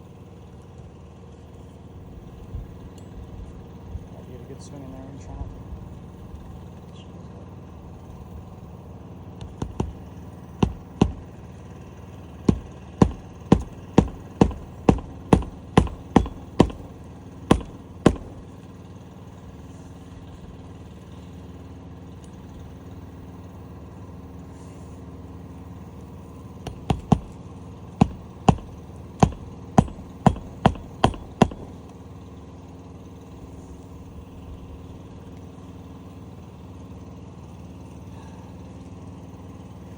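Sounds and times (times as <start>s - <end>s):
engine-like hum: 0.0s - 39.9s
hammer striking nails: 9.4s - 11.4s, 12.5s - 18.7s, 26.6s - 27.4s, 28.0s - 31.9s.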